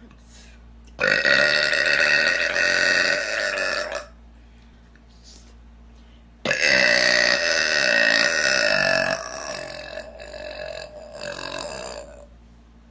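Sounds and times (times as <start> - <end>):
woman belching: 1.0 - 4.1, 6.5 - 12.3.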